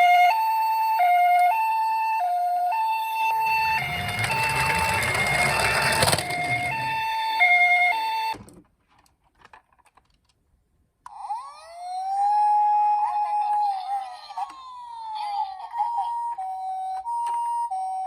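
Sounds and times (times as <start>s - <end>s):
two-tone ambulance siren: 0.0s - 7.2s, 11.2s - 14.1s
wailing siren: 3.0s - 7.2s
rushing noise and low rumble: 3.4s - 7.1s.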